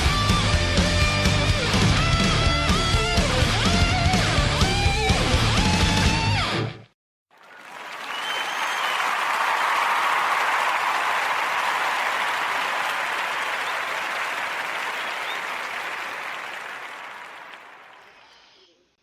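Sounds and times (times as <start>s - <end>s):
crowd applause: 7.3s - 18.4s.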